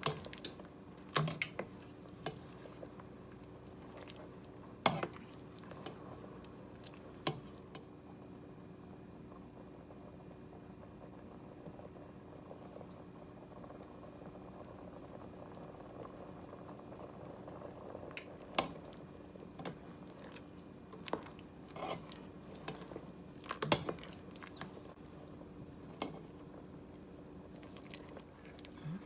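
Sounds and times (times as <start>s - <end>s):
soup bubbling in a pot: 0.0s - 29.0s
sharp pops and clicks: 18.1s - 19.0s.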